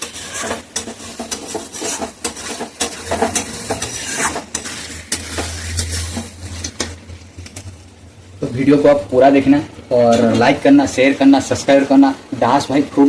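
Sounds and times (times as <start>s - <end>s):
ladle scraping pot: 0.0s - 7.7s
curry sizzling: 0.0s - 13.0s.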